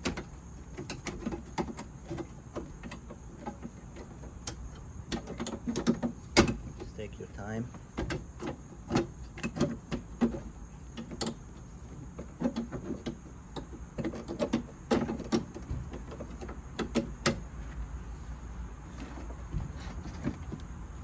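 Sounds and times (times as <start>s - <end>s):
plastic clicks and knocks: 0.0s - 6.6s.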